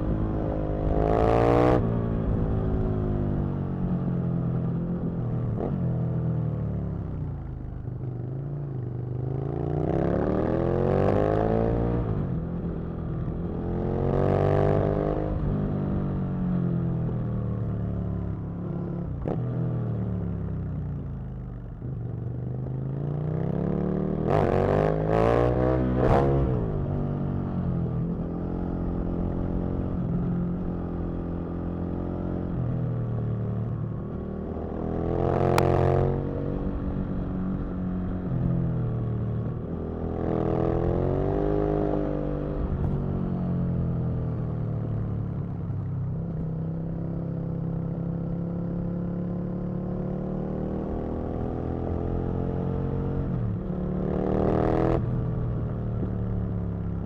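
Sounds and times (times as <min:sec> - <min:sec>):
motorcycle engine revving: 0:33.8 - 0:44.6, 0:45.2 - 0:57.0.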